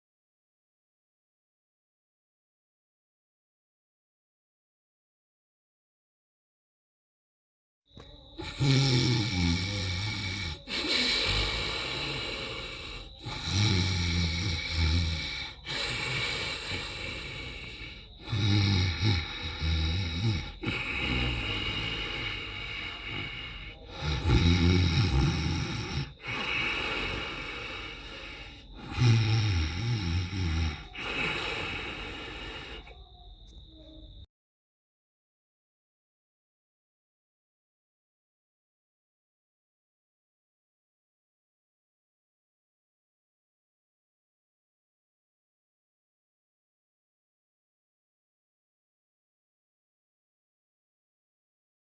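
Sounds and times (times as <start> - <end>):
quiet breathing: 7.9 - 34.3
monkey snoring: 8.0 - 33.2.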